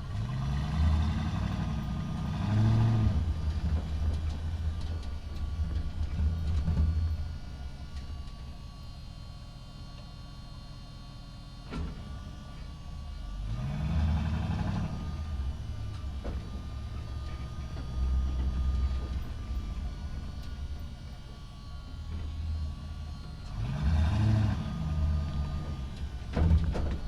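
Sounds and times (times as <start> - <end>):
truck engine running: 0.0 - 27.0
truck bumping with sharp knocks: 14.4 - 19.8, 24.2 - 27.0.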